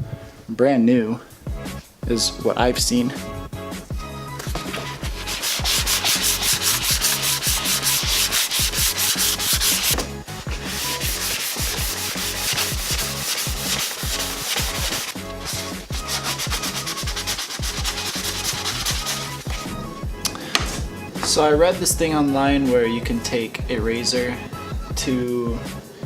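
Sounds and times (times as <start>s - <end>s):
sandpaper rubbing on plastic: 4.5s - 19.7s.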